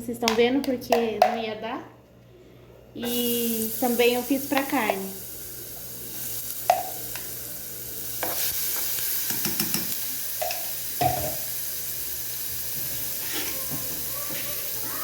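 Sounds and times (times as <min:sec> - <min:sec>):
garlic sizzling in oil: 0:03.0 - 0:15.0.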